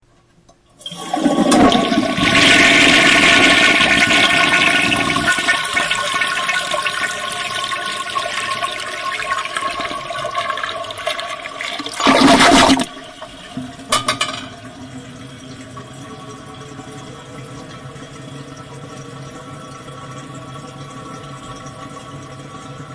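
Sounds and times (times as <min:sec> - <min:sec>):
toilet flushing: 0:00.7 - 0:22.9.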